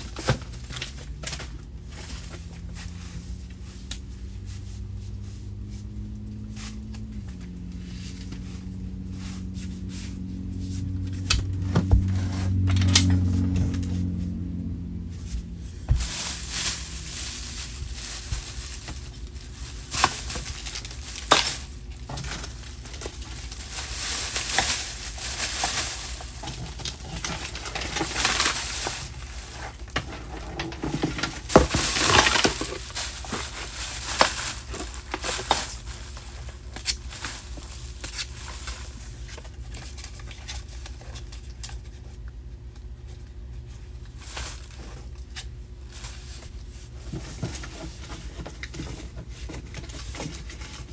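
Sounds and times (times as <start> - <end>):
rustling: 0.0 - 42.1, 43.5 - 50.9
low hum: 1.3 - 29.5.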